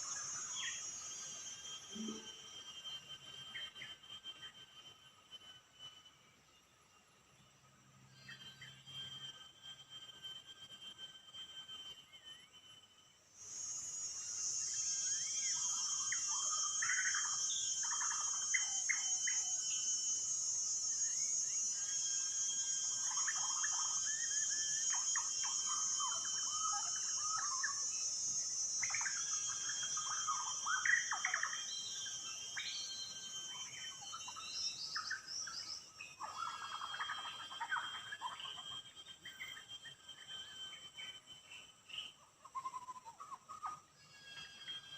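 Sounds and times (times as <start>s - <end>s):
songbird singing: 0.0s - 10.4s, 13.5s - 44.9s
high-pitched insect drone: 0.0s - 44.9s.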